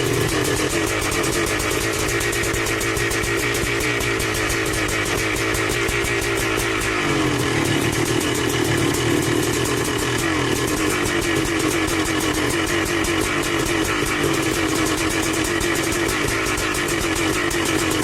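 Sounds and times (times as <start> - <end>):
two-stroke motorcycle engine running: 0.0 - 18.0.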